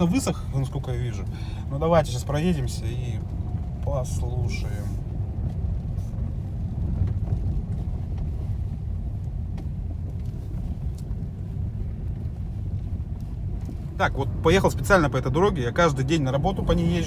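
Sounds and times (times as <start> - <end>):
road and tyre rumble in car: 0.0 - 17.0
faint light ticks: 2.3 - 14.0.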